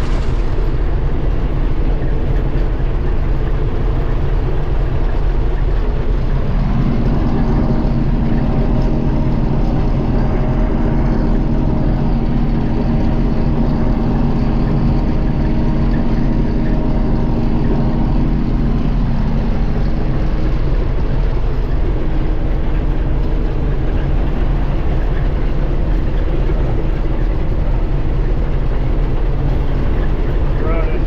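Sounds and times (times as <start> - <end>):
combine harvester engine drone: 0.0 - 31.0
higher steady tones: 6.2 - 27.4.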